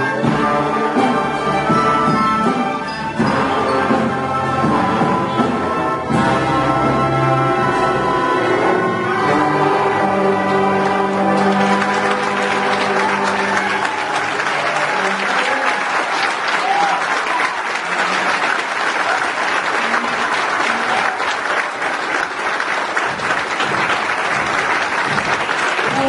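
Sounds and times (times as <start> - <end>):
audience applauding: 9.0 - 26.0.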